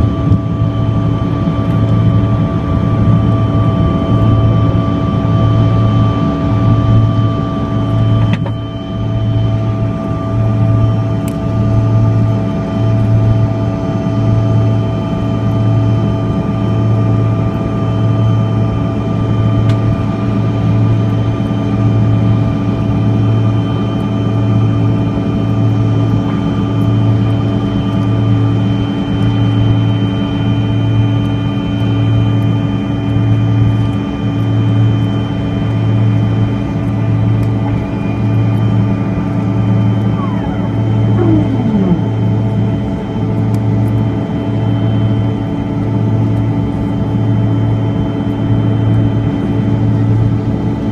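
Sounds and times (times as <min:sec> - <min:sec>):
jet engines droning: 0:00.0 - 0:50.9
falling tone: 0:40.1 - 0:42.3.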